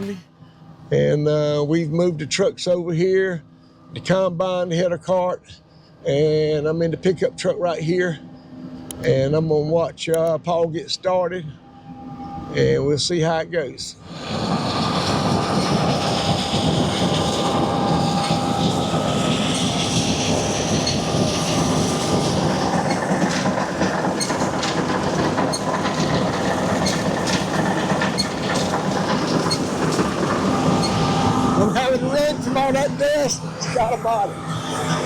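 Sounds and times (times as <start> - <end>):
combine harvester machinery: 13.6 - 35.0
whining tones: 13.9 - 35.0.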